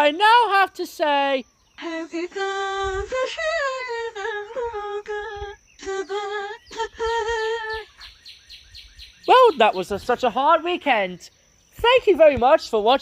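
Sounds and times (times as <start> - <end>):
person humming a slow tune: 1.8 - 8.1.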